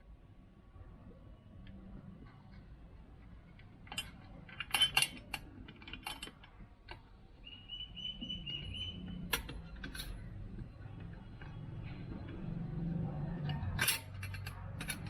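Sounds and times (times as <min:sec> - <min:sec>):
metal tools clinking: 0:03.9 - 0:06.5, 0:13.5 - 0:15.0.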